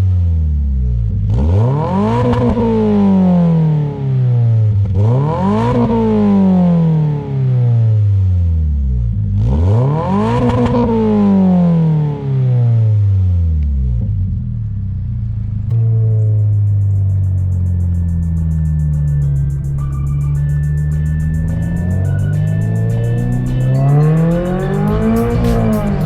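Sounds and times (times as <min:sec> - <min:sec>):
car engine revving: 0:01.0 - 0:08.0, 0:09.1 - 0:13.1, 0:14.0 - 0:26.0
steady engine drone: 0:14.1 - 0:26.0.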